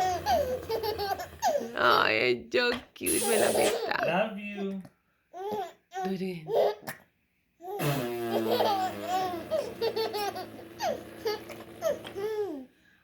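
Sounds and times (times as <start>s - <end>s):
baby giggling: 0.0s - 1.7s, 7.7s - 12.6s.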